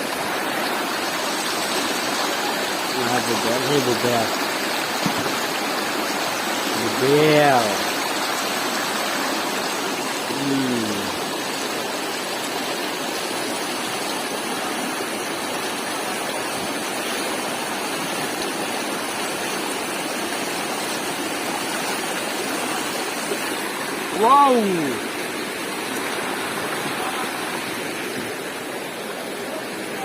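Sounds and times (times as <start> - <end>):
river water rushing: 0.0 - 30.0
brief vocal sound: 10.3 - 11.1.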